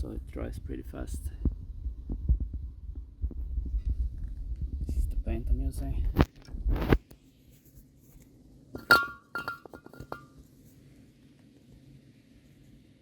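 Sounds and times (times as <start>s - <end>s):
light metallic clinks: 8.8s - 10.3s.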